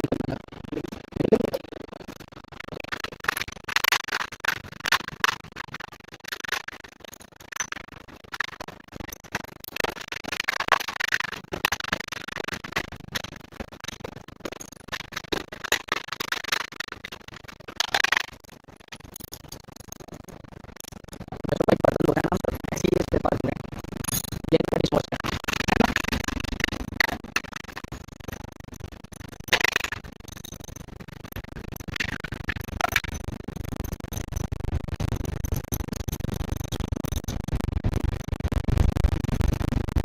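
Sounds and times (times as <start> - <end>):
metal parts and tools clinking: 18.9 - 21.0, 24.0 - 24.5, 29.5 - 34.5.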